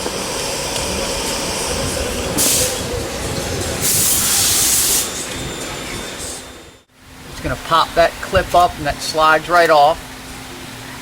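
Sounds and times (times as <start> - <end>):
shop noise rumble: 0.0 - 11.0
pneumatic tool hissing: 2.4 - 2.9, 3.8 - 5.4.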